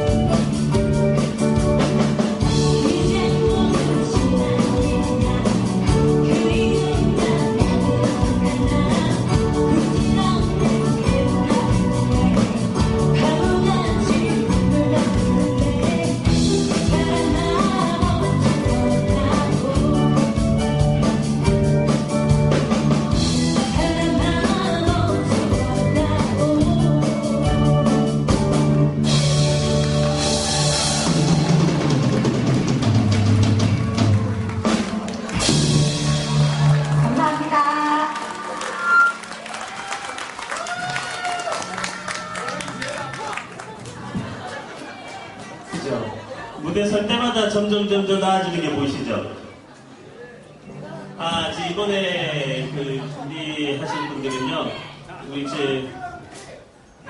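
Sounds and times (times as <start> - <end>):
live band playing: 0.0 - 46.2
person singing: 2.7 - 20.8, 23.6 - 28.1.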